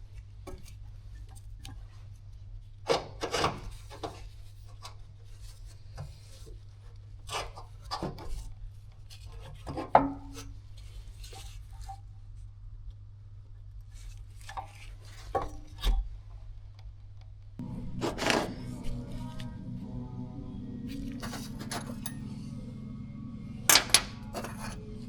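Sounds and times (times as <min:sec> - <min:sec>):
steady low hum: 0:17.0 - 0:25.0
hand tools scraping and knocking: 0:18.0 - 0:18.7, 0:23.7 - 0:24.8.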